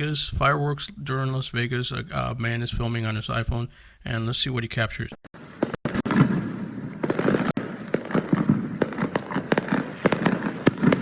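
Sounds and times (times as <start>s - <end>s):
fireworks popping and banging: 5.4s - 11.0s.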